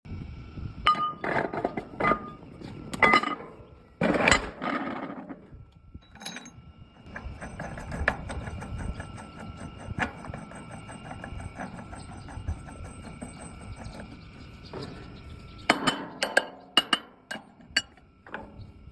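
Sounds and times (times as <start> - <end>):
small machine humming: 5.2 - 18.9.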